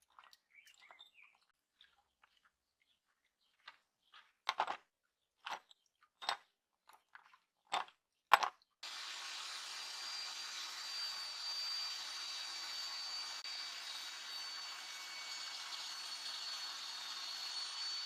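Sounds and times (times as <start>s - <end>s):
power tool motor whining: 8.8s - 18.0s.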